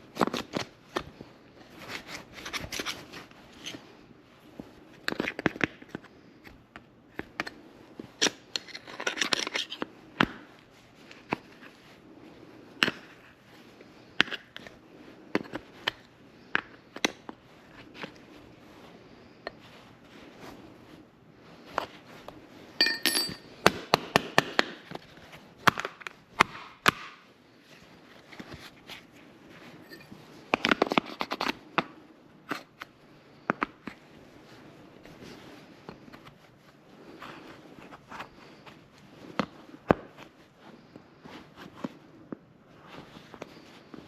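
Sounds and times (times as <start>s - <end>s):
metal clicks and clinks: 22.8s - 23.4s.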